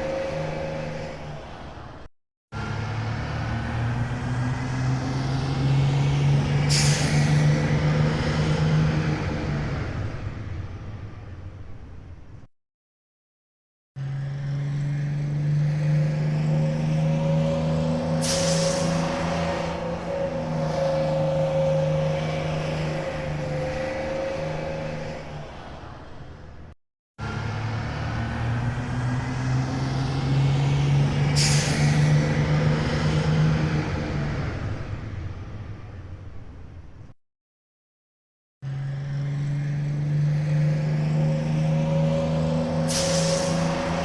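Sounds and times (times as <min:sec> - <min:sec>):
air brakes hissing: 0:06.6 - 0:07.6, 0:18.1 - 0:19.6, 0:31.3 - 0:32.4, 0:42.8 - 0:44.0.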